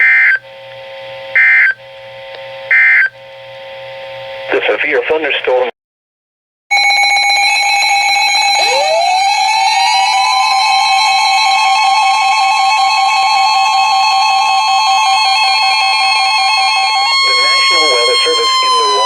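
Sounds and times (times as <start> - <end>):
steady electronic alarm tone: 0.0 - 0.5, 1.3 - 1.8, 2.7 - 3.1, 6.7 - 19.0
rising electronic tone: 8.4 - 10.9.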